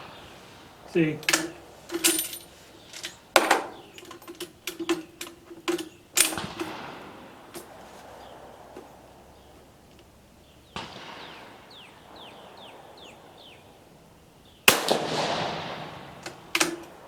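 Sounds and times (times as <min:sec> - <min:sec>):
rifle shot with echo: 0:00.0 - 0:02.0, 0:06.1 - 0:17.0
bird chirping: 0:00.0 - 0:17.0
rifle bolt clicks: 0:01.2 - 0:02.2, 0:16.2 - 0:17.0
faint bang: 0:10.7 - 0:12.0.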